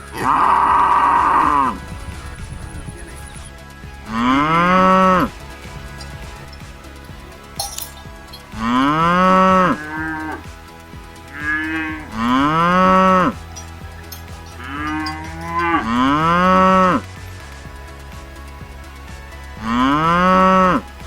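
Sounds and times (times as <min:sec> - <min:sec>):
cow mooing: 0:00.1 - 0:01.9, 0:04.1 - 0:05.3, 0:08.6 - 0:10.4, 0:11.4 - 0:13.4, 0:14.6 - 0:17.0, 0:19.6 - 0:20.8.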